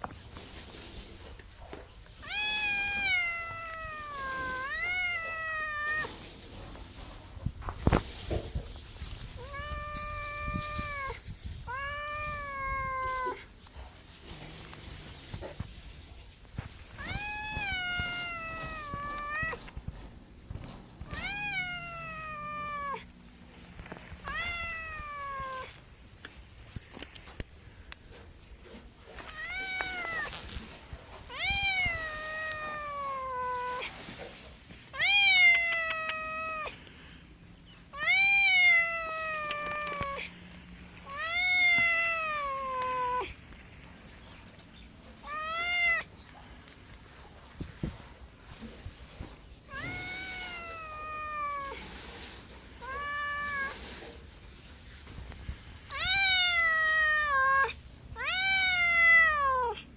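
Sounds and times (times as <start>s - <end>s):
cat meowing: 2.2s - 6.3s, 9.3s - 13.5s, 16.9s - 19.8s, 21.0s - 23.2s, 24.2s - 25.8s, 29.2s - 30.7s, 31.3s - 34.1s, 34.9s - 36.8s, 37.9s - 40.4s, 41.0s - 43.4s, 45.2s - 46.3s, 49.6s - 54.0s, 55.9s - 59.9s.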